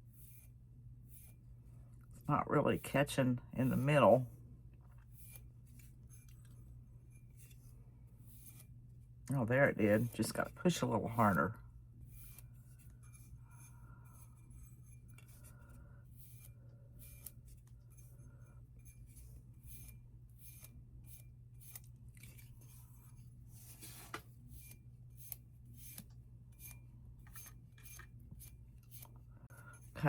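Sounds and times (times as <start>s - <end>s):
steady low hum: 0.0s - 30.0s
rubbing strokes on surface: 18.8s - 26.0s.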